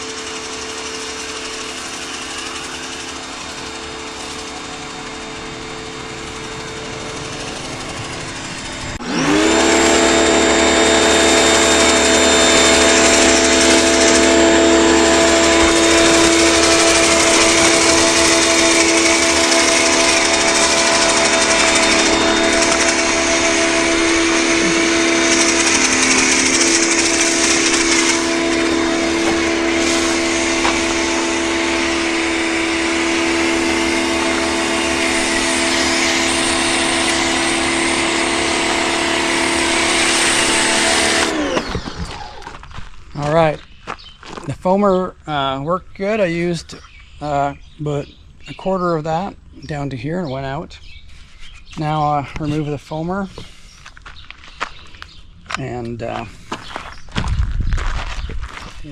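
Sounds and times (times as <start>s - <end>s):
pressure washer motor whine: 0.0s - 44.0s
spray hissing: 16.1s - 41.0s.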